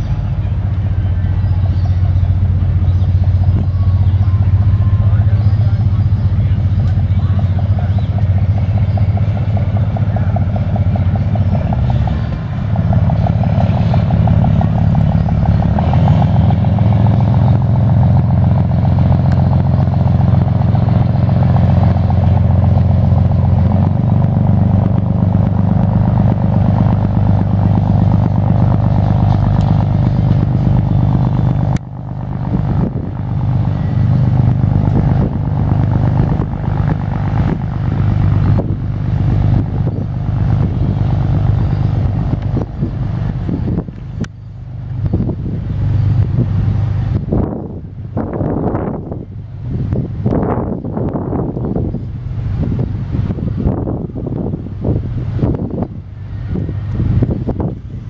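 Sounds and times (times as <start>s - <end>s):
boat engine droning: 0.0s - 58.0s.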